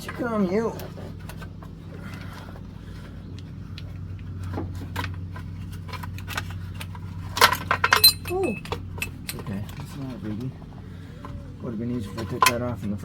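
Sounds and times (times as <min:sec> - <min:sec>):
steady low hum: 0:00.0 - 0:13.0
light metal clicks and knocks: 0:03.3 - 0:13.0.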